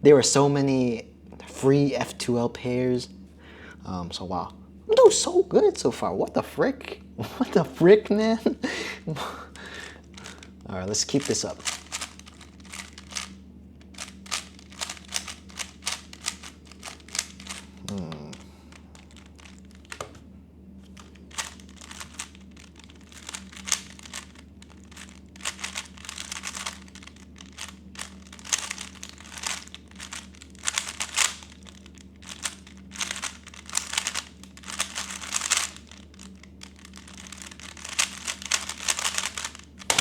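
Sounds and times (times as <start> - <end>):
puzzle cube clicking as layers turn: 10.1 - 18.4, 19.0 - 20.2, 20.9 - 40.0.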